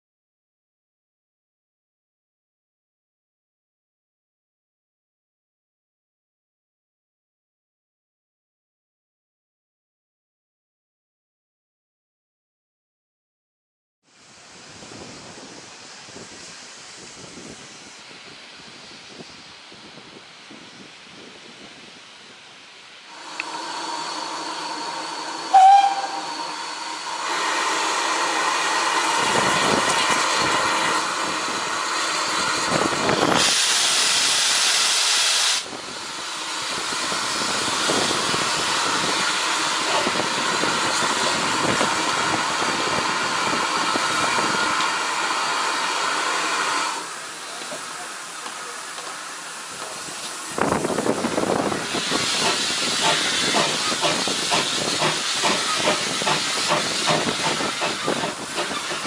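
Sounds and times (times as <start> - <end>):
rush of steam: 14.1 - 59.0
steam locomotive hissing: 14.2 - 59.0
loud pip: 25.4 - 27.1.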